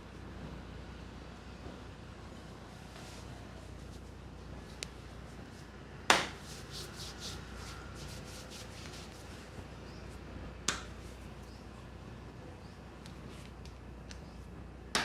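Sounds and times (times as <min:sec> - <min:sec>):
sharp snap: 0:06.1 - 0:06.4, 0:10.7 - 0:11.0.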